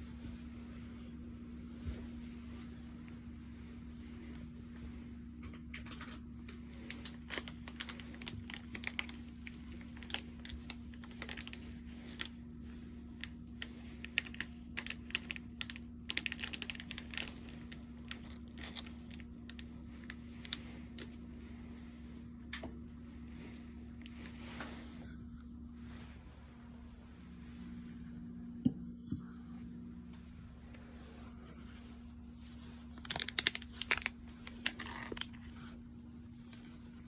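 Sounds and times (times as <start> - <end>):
steady low hum: 0.0 - 37.0
light clicks and crackles: 5.4 - 12.4, 13.1 - 21.2, 32.8 - 37.0.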